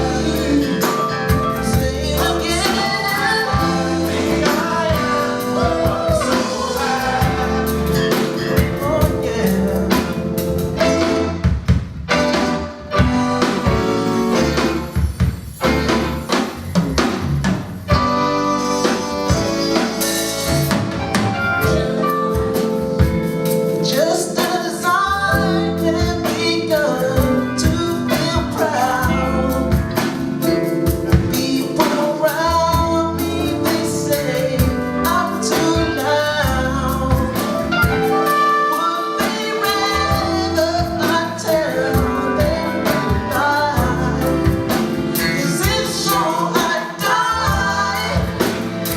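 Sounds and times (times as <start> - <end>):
person singing: 0.0 - 11.2, 21.4 - 48.9
drum kit: 0.0 - 48.9
live band playing: 0.0 - 48.9.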